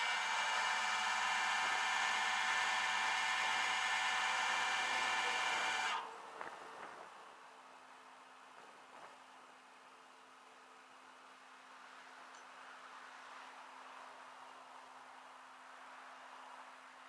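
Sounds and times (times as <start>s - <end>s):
motor whining: 0.0s - 6.1s.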